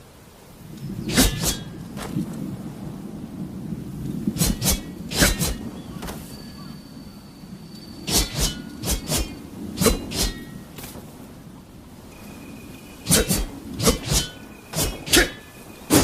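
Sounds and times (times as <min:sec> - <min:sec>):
sword blades clanking: 0:01.1 - 0:01.8, 0:04.4 - 0:05.6, 0:08.1 - 0:10.7, 0:13.1 - 0:16.0
high metallic ringing: 0:06.2 - 0:10.8, 0:12.1 - 0:15.8.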